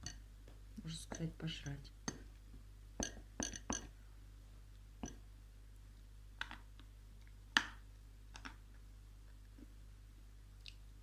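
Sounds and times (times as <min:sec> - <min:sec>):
mouth clicks and smacks eating: 0:10.6 - 0:10.9.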